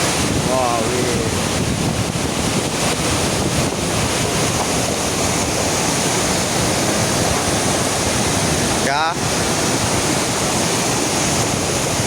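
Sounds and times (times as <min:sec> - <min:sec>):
waterfall rushing: 0:00.0 - 0:12.0.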